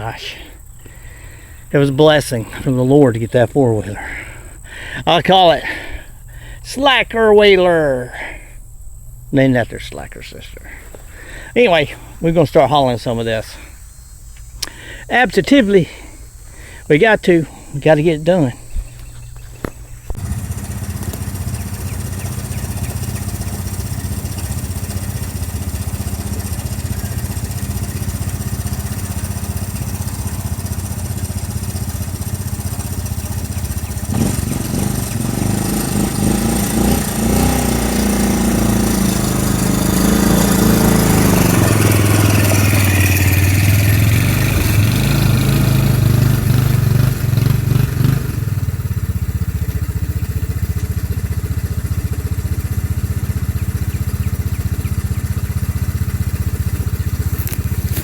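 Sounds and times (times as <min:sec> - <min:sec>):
atv engine running and revving: 0:18.9 - 0:58.0.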